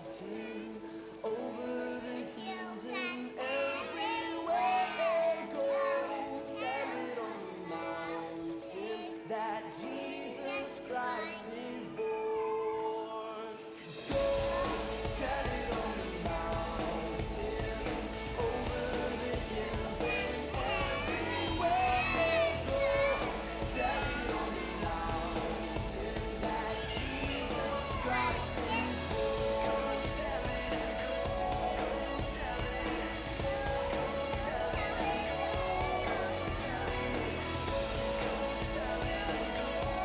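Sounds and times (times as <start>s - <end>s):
children singing: 0.0s - 40.0s
steady bass: 14.1s - 40.0s.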